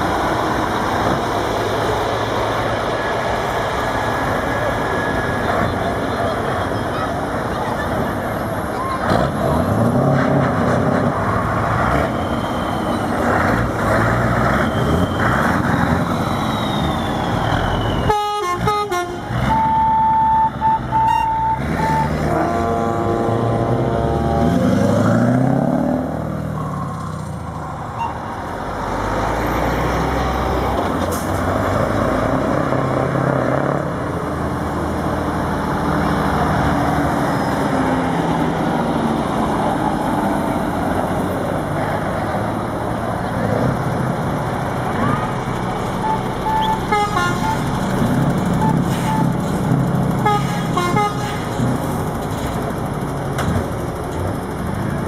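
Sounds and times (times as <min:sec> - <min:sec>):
truck engines revving past: 0:00.0 - 0:55.0
truck horn: 0:18.0 - 0:24.6, 0:46.0 - 0:47.9, 0:50.2 - 0:51.6.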